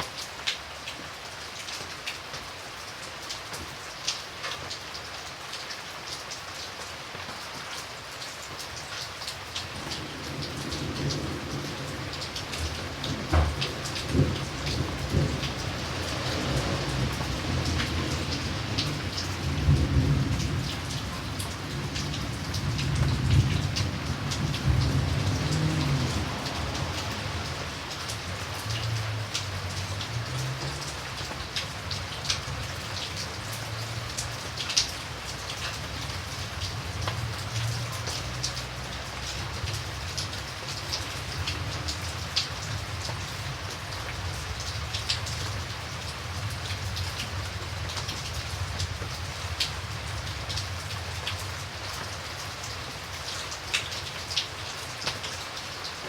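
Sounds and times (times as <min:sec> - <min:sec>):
close raindrop ticks: 0:00.0 - 0:56.0
steady rain: 0:00.0 - 0:56.0
distant thunder rumble: 0:09.7 - 0:31.3.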